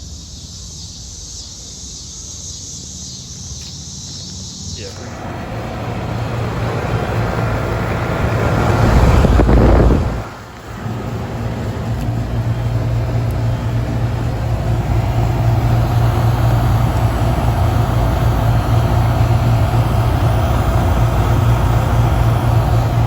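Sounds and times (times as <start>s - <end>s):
compressor low hum: 0.0s - 23.0s
condenser fan rushing: 4.7s - 23.0s.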